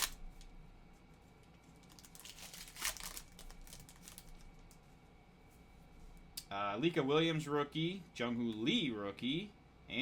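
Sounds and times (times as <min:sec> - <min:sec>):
plastic wrapper crinkling: 0:00.0 - 0:00.3, 0:01.5 - 0:04.8.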